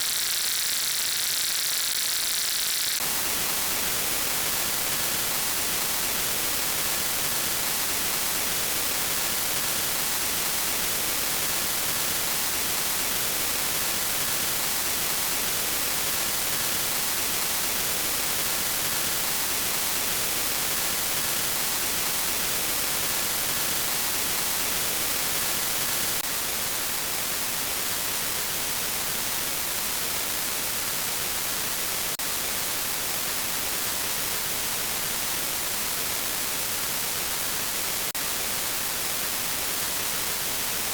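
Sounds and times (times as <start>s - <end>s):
static hiss: 0.0s - 18.5s.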